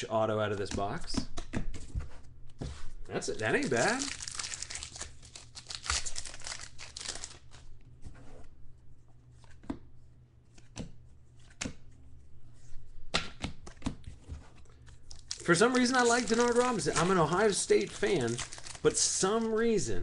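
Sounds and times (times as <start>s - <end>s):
card wrapping crinkling: 3.2s - 7.6s, 15.1s - 19.9s.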